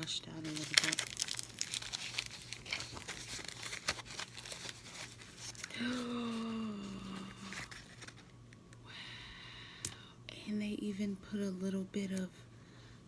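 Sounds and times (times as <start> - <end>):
packaging crinkling and tearing: 0.0 - 6.1, 7.1 - 8.3.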